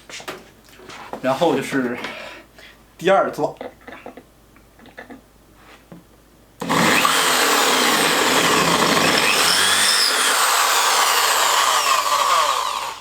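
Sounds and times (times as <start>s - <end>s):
electric drill grinding metal: 6.6s - 13.0s.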